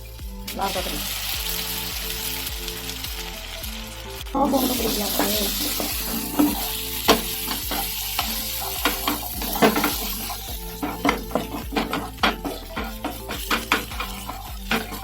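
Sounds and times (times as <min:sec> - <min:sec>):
background music with steady beat: 0:00.0 - 0:15.0
food sizzling in oil: 0:00.0 - 0:15.0
utensil clinking against pan: 0:04.6 - 0:15.0.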